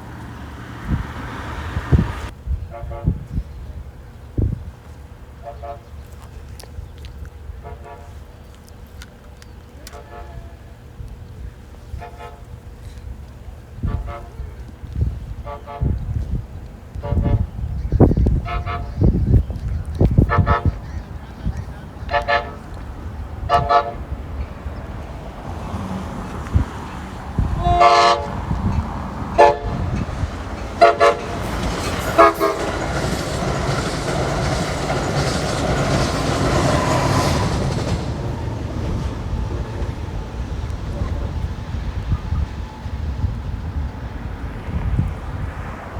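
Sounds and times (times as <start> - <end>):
train passing: 0.0 - 45.9
short honking toots: 22.0 - 22.8, 27.4 - 30.2, 30.8 - 33.0.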